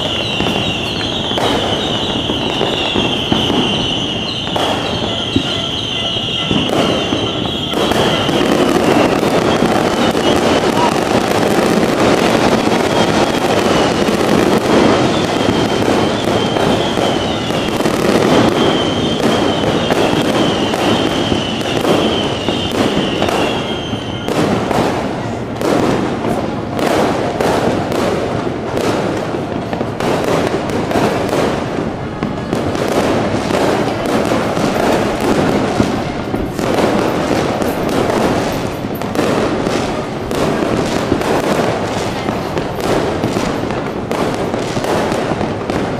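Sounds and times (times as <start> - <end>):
high wavering whistle: 0.0 - 11.1, 15.0 - 24.4
fireworks crackling and popping: 0.0 - 45.9.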